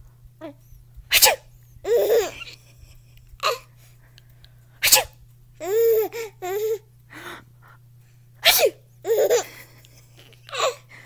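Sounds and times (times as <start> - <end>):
sneeze: 1.1 - 1.5, 4.8 - 5.2, 8.4 - 8.8
little boy giggling: 1.8 - 3.1, 9.1 - 10.9.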